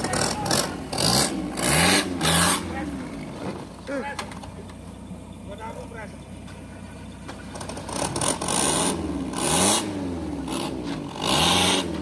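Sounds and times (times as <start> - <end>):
engine revving hard: 0.0 - 3.0, 7.6 - 12.0
tyres and underbody scraping: 0.0 - 8.4, 10.6 - 11.2.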